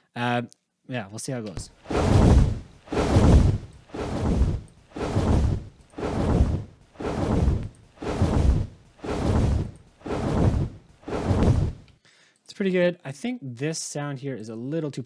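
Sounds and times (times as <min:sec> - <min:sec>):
wing flap whooshes: 0:01.6 - 0:11.9.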